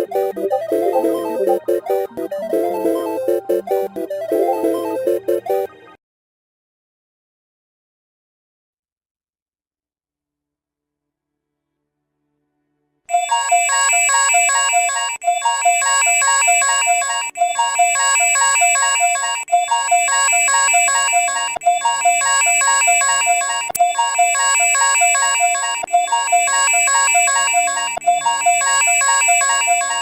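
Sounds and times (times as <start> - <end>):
synthetic alarm beeps: 0.0 - 5.7, 13.1 - 30.0.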